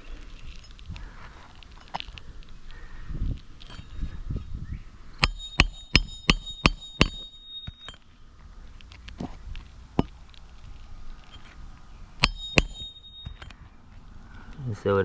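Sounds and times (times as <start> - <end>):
hammer striking nails: 5.2 - 8.0, 12.2 - 13.5.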